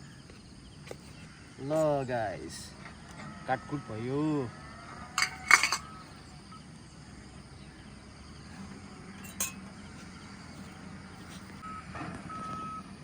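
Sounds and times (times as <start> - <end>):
cooking utensils clinking: 5.2 - 5.9, 9.2 - 9.8.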